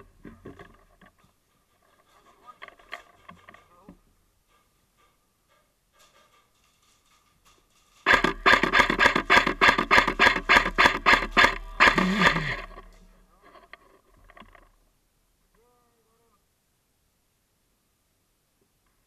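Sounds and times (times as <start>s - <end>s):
airsoft gun firing rapid shots: 8.1s - 12.9s.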